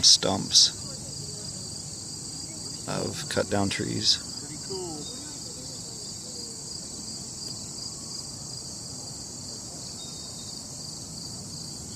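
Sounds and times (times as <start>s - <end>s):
insects chirring: 0.0s - 11.9s.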